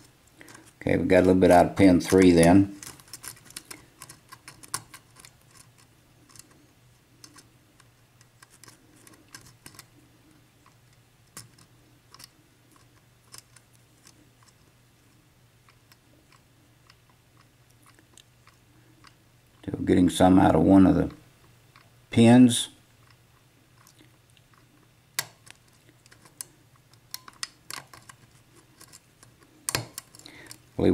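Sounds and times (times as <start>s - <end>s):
lock pick clicking and scraping: 1.8s - 10.0s, 10.6s - 14.6s, 23.8s - 30.7s.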